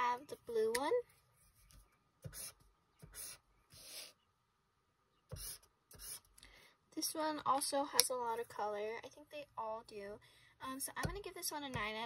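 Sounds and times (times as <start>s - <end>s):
highlighter drawn across paper: 2.3s - 4.2s, 5.4s - 6.3s.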